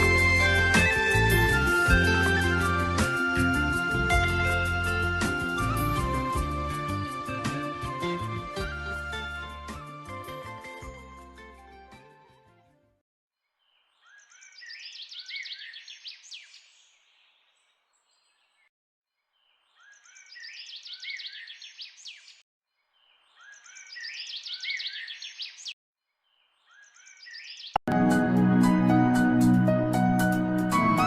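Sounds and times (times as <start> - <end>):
songbird singing: 13.6 - 18.7, 19.3 - 27.8.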